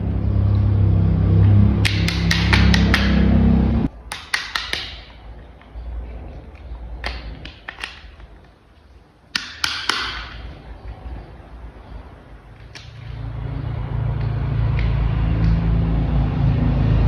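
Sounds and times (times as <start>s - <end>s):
plastic toy parts clicking: 4.1s - 5.7s, 6.5s - 8.6s.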